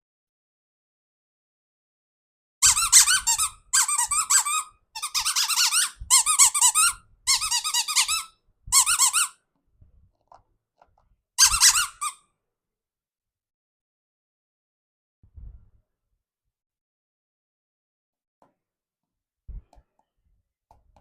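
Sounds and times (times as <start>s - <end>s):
squeaky rubber toy squeaking: 2.6s - 9.4s, 11.4s - 12.2s.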